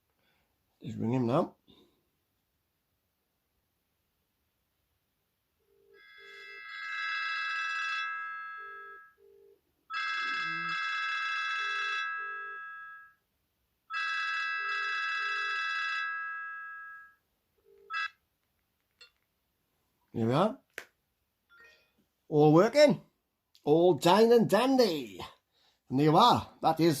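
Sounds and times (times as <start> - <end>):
mobile phone ringtone: 5.6 - 13.2, 13.9 - 18.2.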